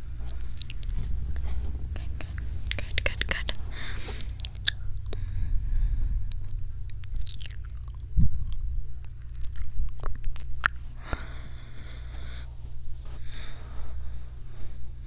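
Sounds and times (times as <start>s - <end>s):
breathy hiss: 0.0s - 7.7s, 10.8s - 15.0s
wet mouth clicks and smacks: 0.2s - 5.2s, 6.3s - 11.2s.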